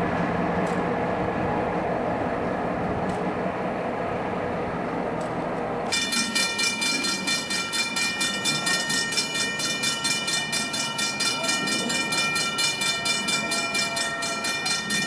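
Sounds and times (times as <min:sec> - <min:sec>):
train rumbling on rails: 0:00.0 - 0:15.0
pulsing high metallic tones: 0:05.9 - 0:15.0.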